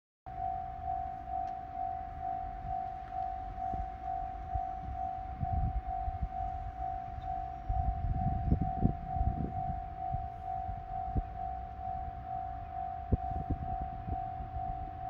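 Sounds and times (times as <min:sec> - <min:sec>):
level-crossing electronic alarm: 0:00.3 - 0:15.0.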